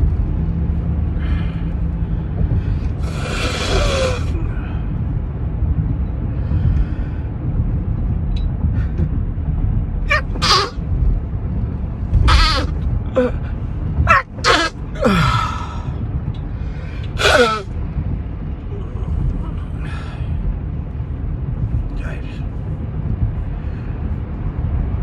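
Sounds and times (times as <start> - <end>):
steady low rumble: 0.0 - 25.0
person sneezing and gasping: 10.1 - 10.8, 12.2 - 13.4, 14.1 - 15.8, 17.2 - 17.7.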